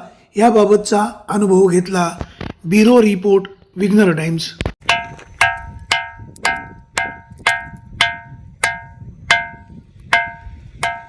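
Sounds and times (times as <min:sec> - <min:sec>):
stone striking ringing rock: 0:04.8 - 0:11.0.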